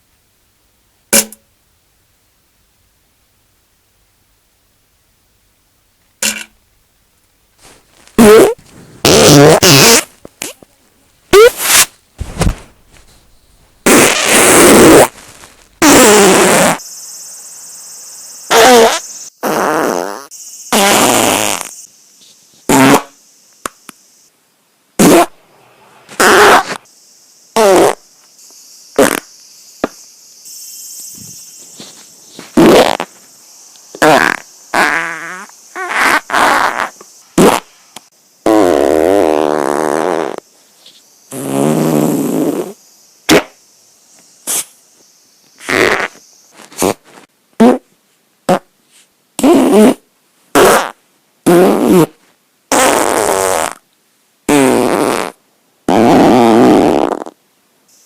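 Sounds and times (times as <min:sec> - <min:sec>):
human farts: 0:07.6 - 0:10.6, 0:11.3 - 0:13.1, 0:13.8 - 0:15.2, 0:15.8 - 0:16.8, 0:18.5 - 0:21.8, 0:22.7 - 0:23.2, 0:25.0 - 0:25.4, 0:26.1 - 0:26.8, 0:27.6 - 0:28.0, 0:29.0 - 0:29.3, 0:32.4 - 0:33.1, 0:34.0 - 0:37.7, 0:38.4 - 0:40.4, 0:41.3 - 0:43.6, 0:45.6 - 0:47.0, 0:47.6 - 0:47.9, 0:48.5 - 0:48.7, 0:49.4 - 0:53.8, 0:54.5 - 0:57.4.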